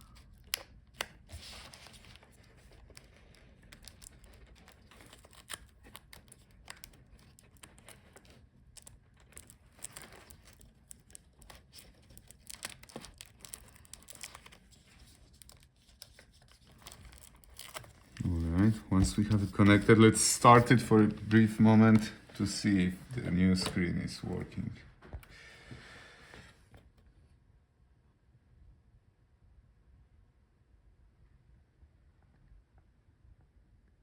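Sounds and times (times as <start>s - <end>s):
plastic rustling: 0.0s - 24.7s.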